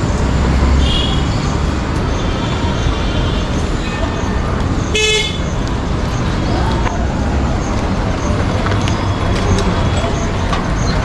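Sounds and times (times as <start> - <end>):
distant voices: 0.0 - 11.0
street traffic: 0.0 - 11.0
vehicle horn blast: 4.9 - 5.5.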